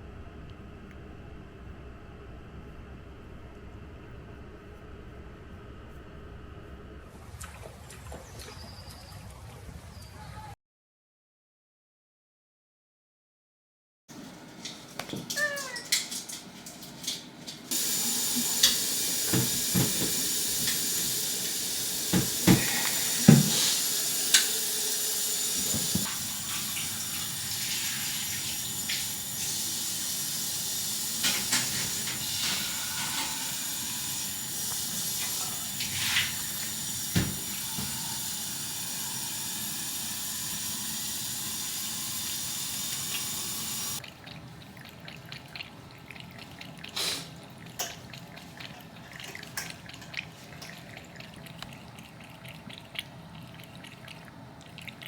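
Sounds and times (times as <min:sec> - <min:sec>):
tap water running into sink: 0:17.1 - 0:44.0.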